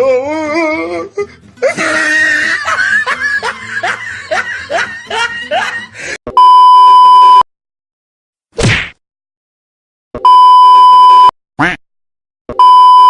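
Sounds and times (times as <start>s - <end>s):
person laughing in squeals: 1.6s - 6.2s
bleep tone: 6.3s - 7.4s, 10.2s - 11.3s, 12.6s - 13.0s.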